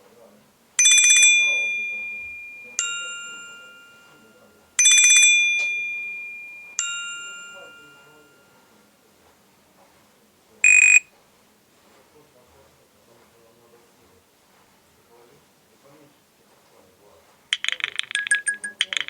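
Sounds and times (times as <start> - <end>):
bell-like phone ringtone: 0.8 - 8.8, 10.6 - 11.0, 17.6 - 19.0.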